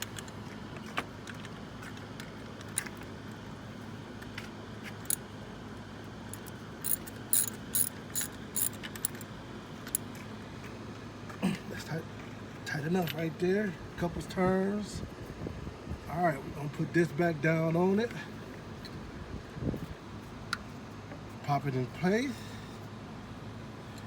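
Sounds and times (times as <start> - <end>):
socket ratchet clicking: 6.4 - 9.2.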